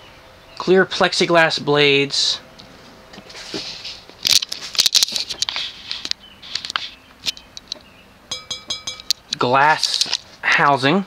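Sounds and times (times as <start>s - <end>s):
short rustles: 2.6s - 7.0s.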